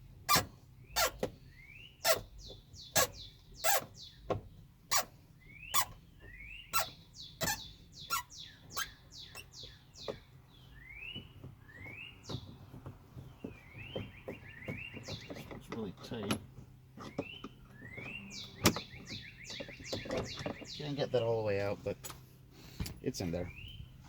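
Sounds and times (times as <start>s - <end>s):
screw squeaking in plastic: 0.3s - 1.3s, 2.0s - 2.3s, 2.9s - 4.0s, 4.9s - 5.1s, 6.7s - 9.5s.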